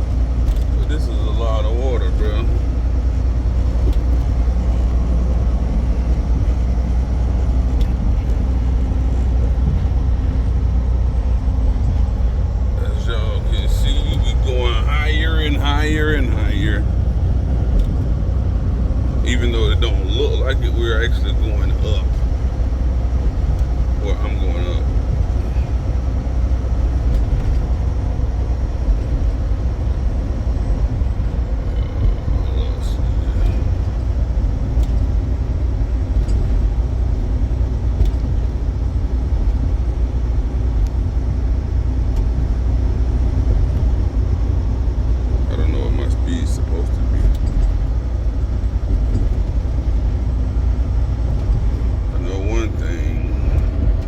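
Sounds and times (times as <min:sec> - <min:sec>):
truck engine rumbling: 0:00.0 - 0:54.0
tyres on road: 0:00.0 - 0:54.0.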